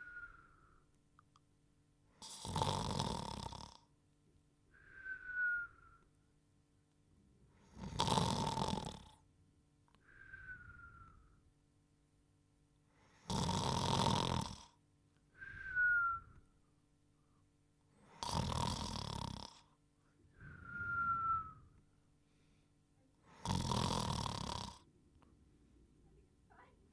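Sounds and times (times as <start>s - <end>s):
cartoon rasping snores: 2.2s - 3.9s, 7.6s - 9.2s, 13.2s - 14.8s, 18.1s - 19.7s, 23.3s - 24.8s
falling whistle: 4.9s - 6.0s, 15.4s - 16.4s, 20.4s - 21.8s.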